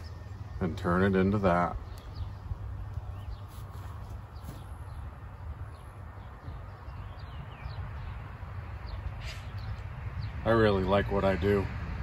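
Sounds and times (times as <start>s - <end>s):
birds chirping: 0.0s - 11.8s
steady low rumble: 0.0s - 12.0s.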